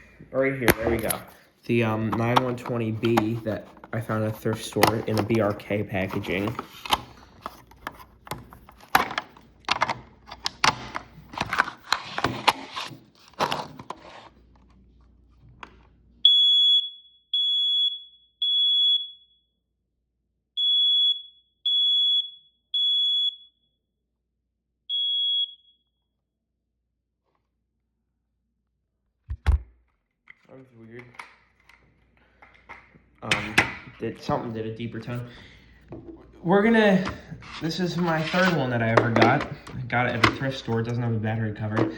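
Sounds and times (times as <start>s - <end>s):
clicks and knocks from handling: 2.0s - 14.0s
smoke alarm beeping: 16.2s - 19.5s, 20.6s - 23.6s, 24.9s - 25.9s.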